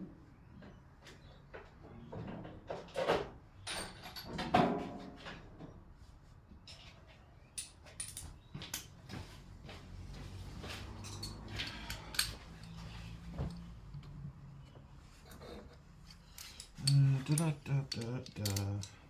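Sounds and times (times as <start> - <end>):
hand tools clicking and knocking: 10.9 - 12.9, 13.5 - 19.0.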